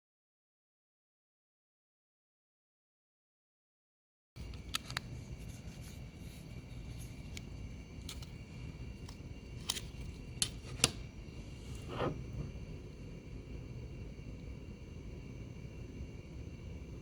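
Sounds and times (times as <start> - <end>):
packaging clicks and snaps: 4.4 - 6.0
low room noise: 4.4 - 17.0.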